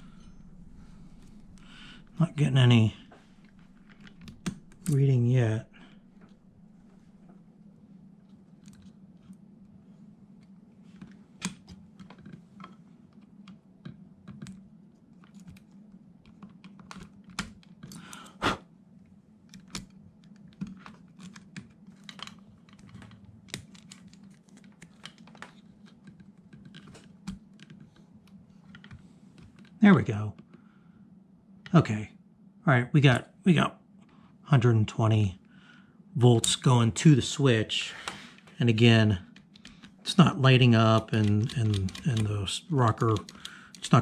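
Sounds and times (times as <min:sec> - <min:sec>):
faint low hum: 0:00.0 - 0:44.0
probe tips clicking on terminals: 0:39.3 - 0:44.0.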